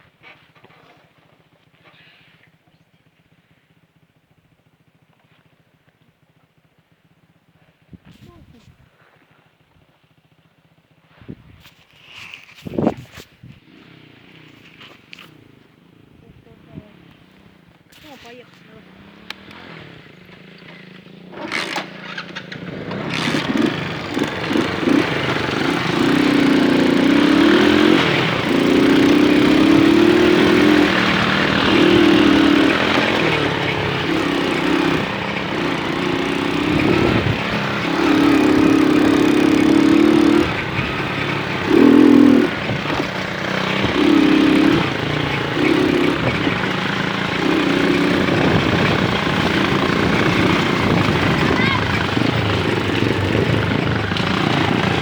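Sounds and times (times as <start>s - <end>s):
moped engine revving: 12.0s - 55.0s.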